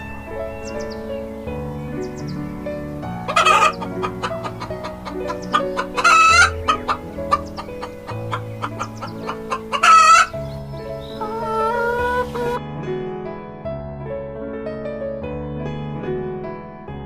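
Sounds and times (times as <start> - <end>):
light music with plucked notes: 0.0 - 17.0
loud chicken calls: 3.2 - 12.6.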